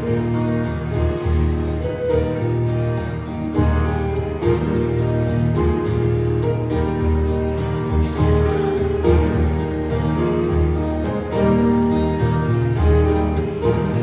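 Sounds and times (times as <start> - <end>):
instrumental guitar music: 0.0 - 14.0.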